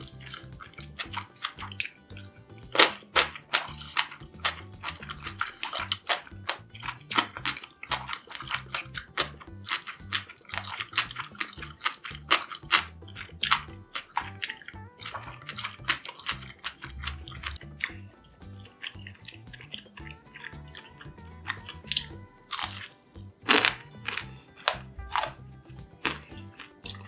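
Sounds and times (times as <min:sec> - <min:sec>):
crunching and chewing crispy food: 0:21.7 - 0:25.4, 0:26.0 - 0:27.0.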